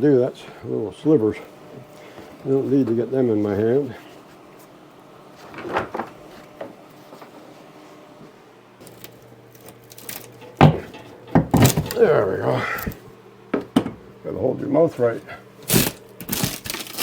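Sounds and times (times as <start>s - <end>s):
wooden boards knocking and scraping: 10.5s - 12.0s.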